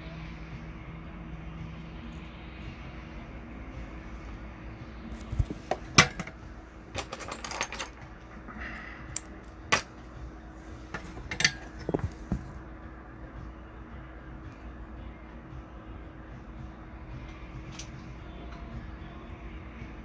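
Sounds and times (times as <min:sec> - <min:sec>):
bench equipment hum: 0:00.0 - 0:20.0
small tools clicking and tapping: 0:10.9 - 0:12.5.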